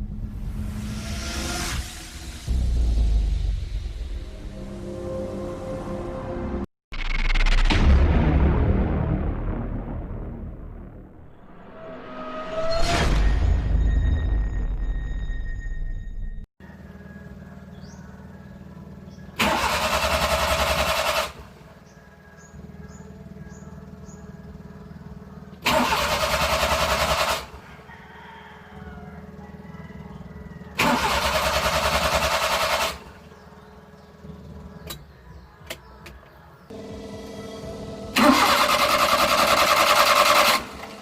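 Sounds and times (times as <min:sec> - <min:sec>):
engine cranking on starter: 0:19.1 - 0:21.6, 0:25.4 - 0:27.7, 0:30.6 - 0:33.4, 0:38.1 - 0:41.0.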